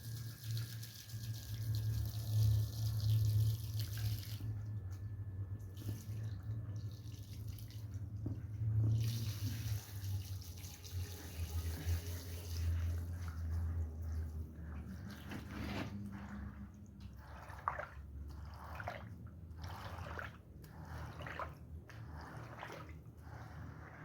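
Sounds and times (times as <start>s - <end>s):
water hissing onto rug: 8.6s - 16.6s
steady low hum: 11.6s - 24.0s.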